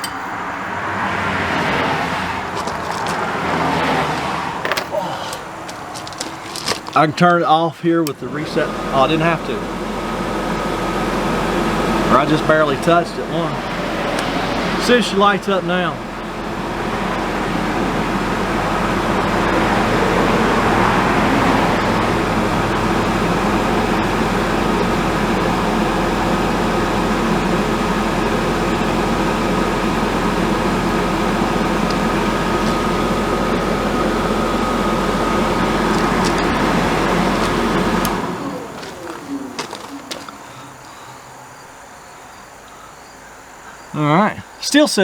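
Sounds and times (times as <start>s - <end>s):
furnace blower fan running: 0.4s - 4.6s, 8.1s - 41.1s.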